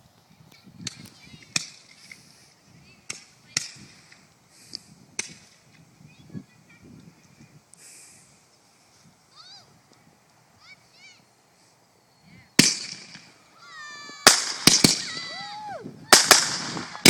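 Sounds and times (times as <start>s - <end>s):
fireworks bangs: 12.6s - 17.0s.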